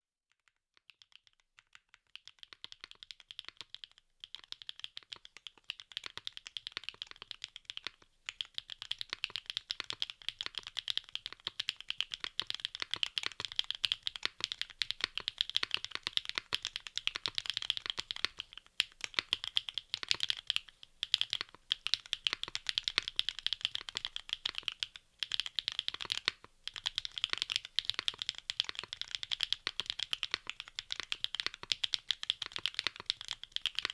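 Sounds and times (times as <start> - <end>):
mechanical keyboard keystroke clacks: 8.4 - 33.9.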